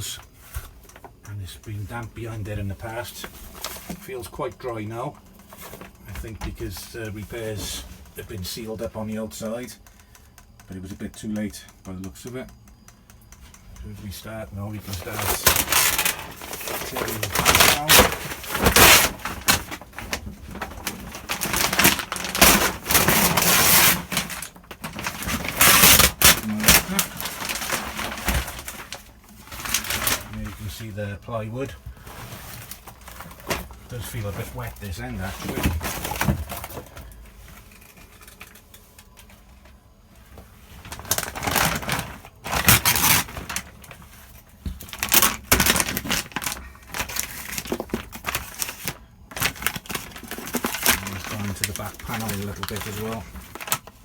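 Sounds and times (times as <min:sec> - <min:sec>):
wallboard tearing and splintering: 0:15.0 - 0:30.4, 0:41.0 - 0:43.8, 0:44.9 - 0:53.9.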